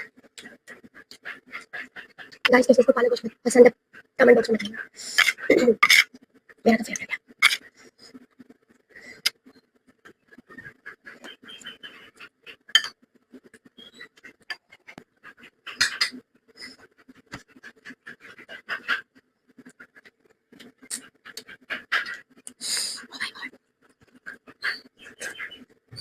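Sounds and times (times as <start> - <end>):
chewing and lip-smacking: 0.2 - 2.5, 13.3 - 22.6.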